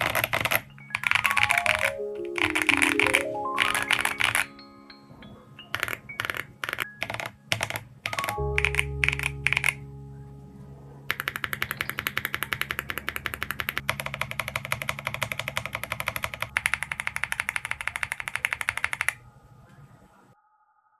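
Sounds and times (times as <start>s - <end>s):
rapid even clicking rhythm: 0.0s - 10.0s, 11.1s - 19.2s
faint two-tone hum: 0.0s - 20.4s
sustained low chord: 0.6s - 17.3s.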